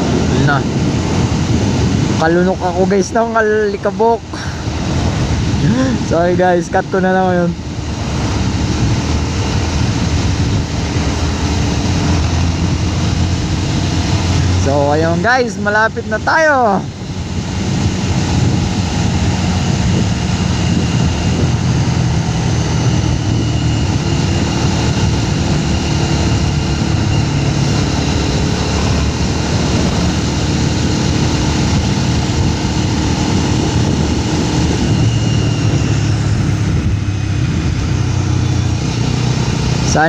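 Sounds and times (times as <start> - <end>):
motorcycle engine running: 0.0 - 40.0
wind and road noise: 0.0 - 40.0.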